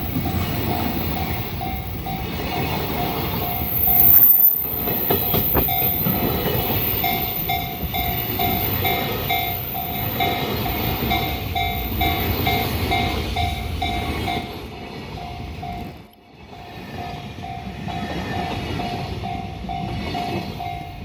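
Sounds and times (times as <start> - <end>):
sharp track clacks: 0.0 - 16.2
crossing warning bell ringing: 0.0 - 21.0
train wheel and track noise: 0.0 - 21.0.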